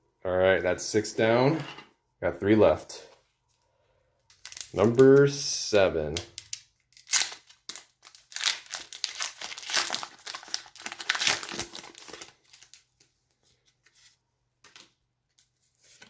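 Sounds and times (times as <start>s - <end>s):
foil wrapper crinkling and tearing: 4.3s - 5.3s, 6.2s - 13.1s.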